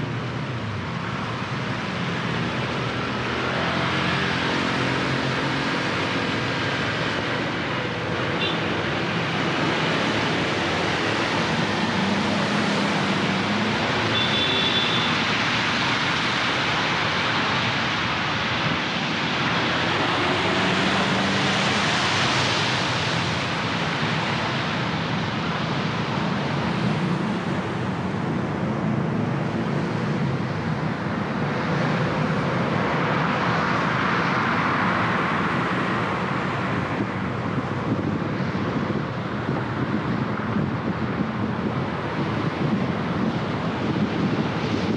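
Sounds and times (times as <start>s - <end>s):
car engines running: 0.0s - 44.9s
tyres hissing on wet road: 10.6s - 27.5s.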